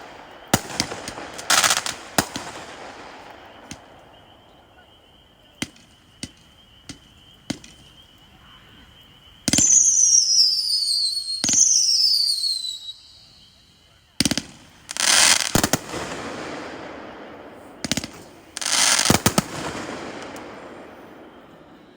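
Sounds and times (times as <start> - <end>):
firework shots popping: 0.0 - 4.6, 14.2 - 21.9
firework whistles falling in pitch: 0.0 - 4.6, 9.5 - 13.7, 14.3 - 15.8, 17.8 - 21.9
firework report with crackle: 0.0 - 21.9.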